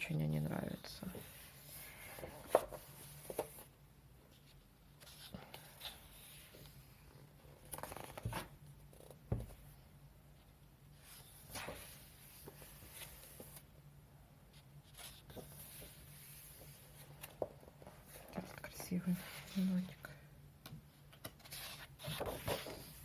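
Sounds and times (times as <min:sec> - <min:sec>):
paper pages turning: 0:01.1 - 0:03.7, 0:07.6 - 0:09.2, 0:11.0 - 0:13.7, 0:14.8 - 0:18.6, 0:21.1 - 0:23.0.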